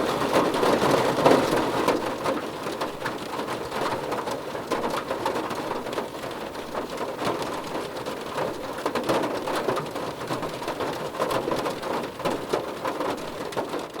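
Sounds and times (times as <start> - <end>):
rain on a car roof: 0.0 - 14.0.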